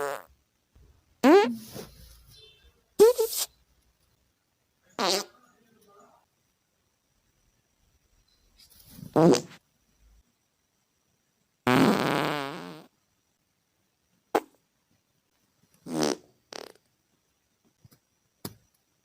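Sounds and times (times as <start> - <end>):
human farts: 0.0 - 0.3, 1.2 - 1.9, 5.0 - 5.4, 9.0 - 9.6, 11.6 - 12.9, 14.3 - 14.6, 15.8 - 16.9.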